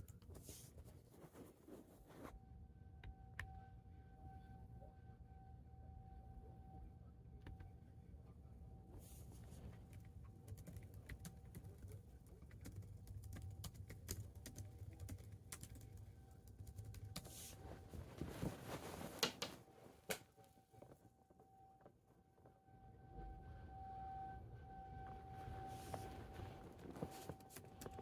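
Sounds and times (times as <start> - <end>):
typing on a keyboard: 9.9 - 17.4.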